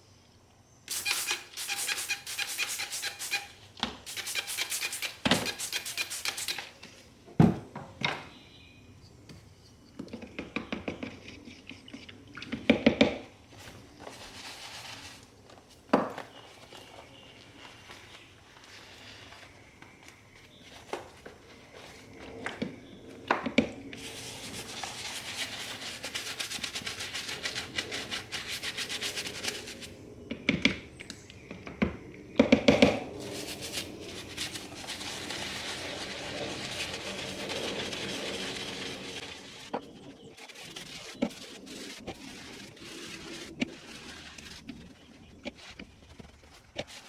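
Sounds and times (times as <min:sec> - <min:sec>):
leather glove being scrubbed: 0:00.9 - 0:06.6, 0:24.0 - 0:29.9, 0:33.2 - 0:39.7, 0:40.4 - 0:44.7
knocks and thumps: 0:07.3 - 0:08.3.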